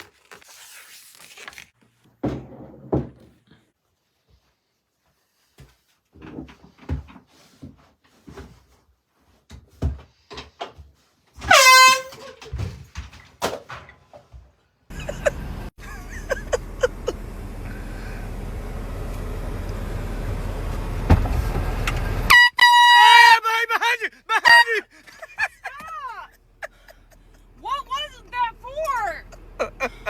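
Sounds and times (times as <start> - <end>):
air horn blast: 11.4 - 12.4, 22.3 - 23.3.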